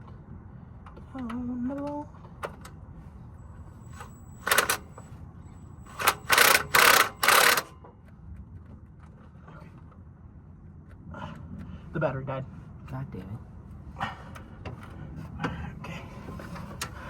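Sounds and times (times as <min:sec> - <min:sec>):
impact wrench hammering: 0:04.0 - 0:04.9, 0:05.9 - 0:07.8.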